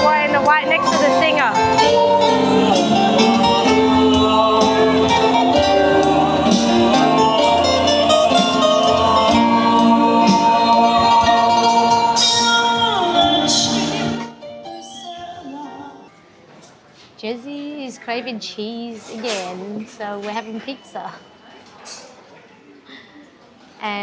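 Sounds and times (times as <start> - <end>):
traditional instruments playing: 0.0 - 14.2
person singing: 0.0 - 16.1.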